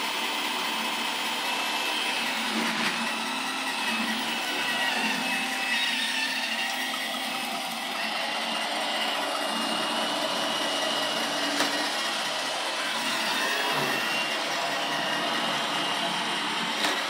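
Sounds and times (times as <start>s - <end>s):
robot vacuum whirring: 0.1s - 17.0s.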